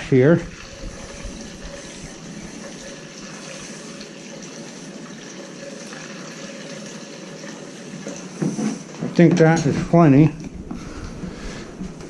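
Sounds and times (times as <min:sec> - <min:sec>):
gasoline pouring through funnel: 0:00.0 - 0:09.0.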